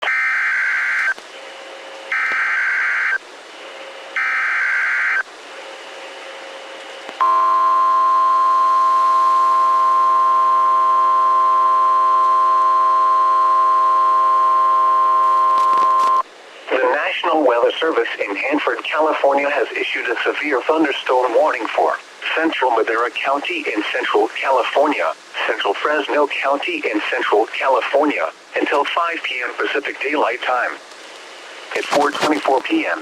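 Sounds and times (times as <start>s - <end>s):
steady alarm tone: 4.2s - 5.2s, 7.2s - 16.2s
radio hiss: 9.6s - 33.0s.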